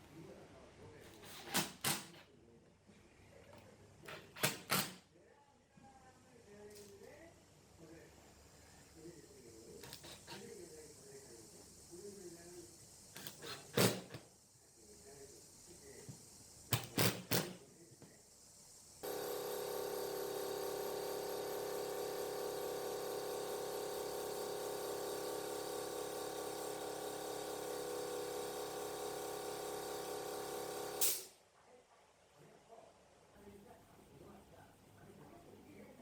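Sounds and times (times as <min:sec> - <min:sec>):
electric power tool running: 0:19.0 - 0:31.2.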